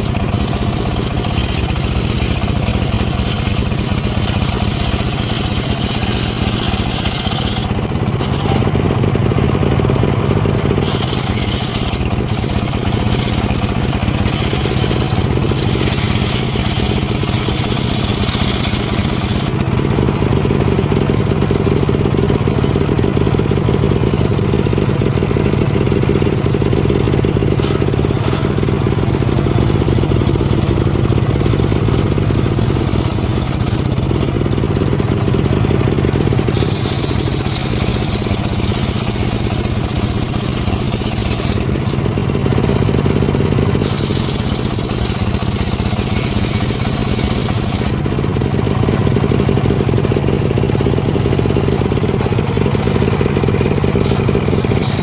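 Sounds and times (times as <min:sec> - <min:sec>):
blade hissing in wood: 0:00.0 - 0:08.7, 0:10.8 - 0:19.6, 0:27.6 - 0:34.3, 0:36.2 - 0:41.7, 0:43.8 - 0:47.9, 0:53.9 - 0:55.0
engine-powered saw cutting wood: 0:00.0 - 0:55.0.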